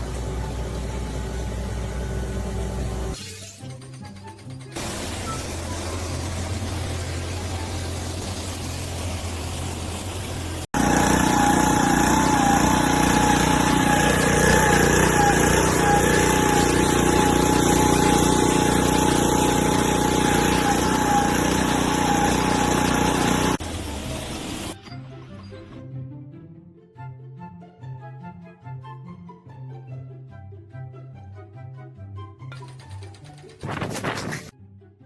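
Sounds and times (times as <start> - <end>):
engine running with high whine: 0.0 - 3.2, 4.8 - 24.8.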